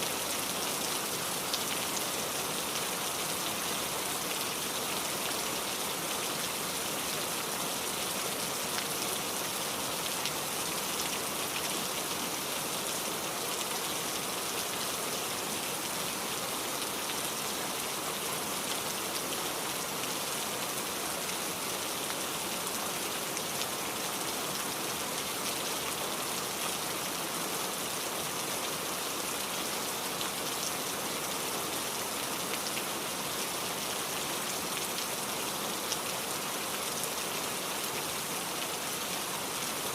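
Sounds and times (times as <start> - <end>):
heavy rain on hard surface: 0.0 - 39.9.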